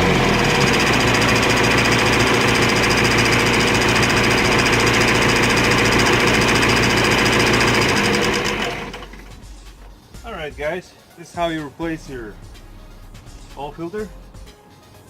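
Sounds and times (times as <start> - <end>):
diesel engine idling: 0.0 - 10.0.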